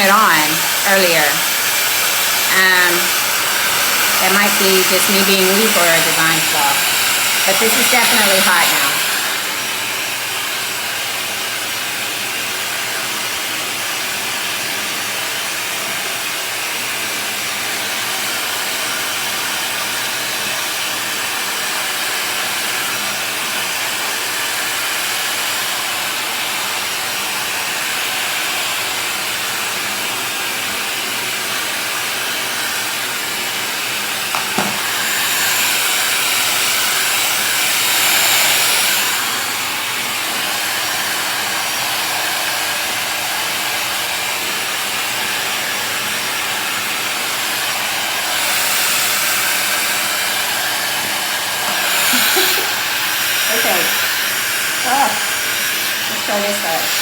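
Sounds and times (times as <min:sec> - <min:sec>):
hair dryer click: 0:00.0 - 0:09.7, 0:34.2 - 0:39.6, 0:49.3 - 0:54.3
hair dryer rushing air: 0:00.0 - 0:57.0.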